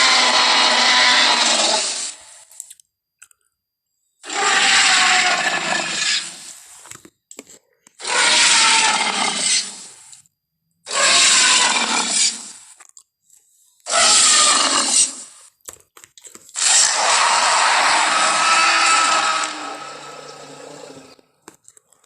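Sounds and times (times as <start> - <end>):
dinosaur roar sound effects: 0.0 - 2.3, 4.2 - 6.6, 8.0 - 10.0, 10.9 - 12.6, 13.9 - 15.4, 16.6 - 21.2.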